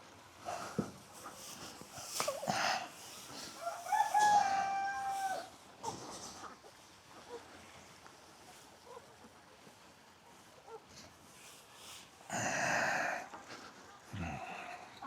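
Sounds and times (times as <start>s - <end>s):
rooster crowing: 3.6s - 5.6s.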